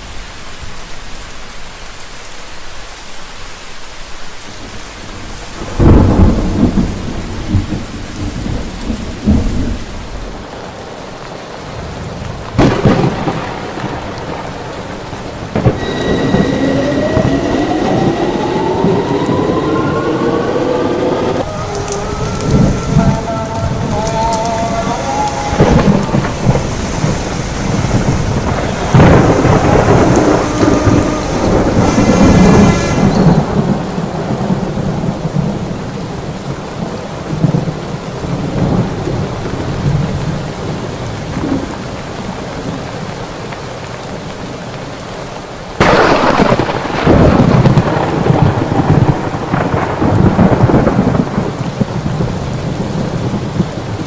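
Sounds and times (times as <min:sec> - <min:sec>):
heavy rain falling: 0:00.0 - 0:54.0
rolling thunder: 0:04.7 - 0:10.5, 0:11.8 - 0:41.9, 0:45.8 - 0:54.0
loud thunderclap: 0:05.2 - 0:10.4, 0:12.5 - 0:36.2, 0:45.8 - 0:54.0.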